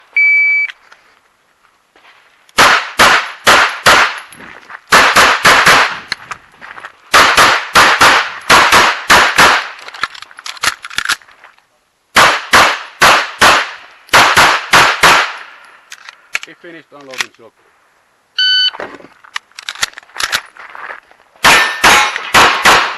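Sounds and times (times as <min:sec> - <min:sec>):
pistol shots in quick pairs: 0:02.6 - 0:04.2, 0:04.9 - 0:06.0, 0:07.1 - 0:09.8, 0:12.1 - 0:15.5, 0:21.4 - 0:22.9.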